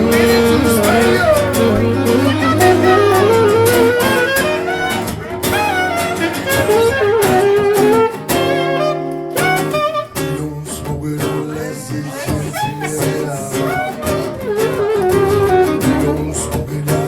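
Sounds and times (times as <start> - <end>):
sustained bass notes: 0.0 - 5.5
gliding melodic lead: 0.0 - 10.4.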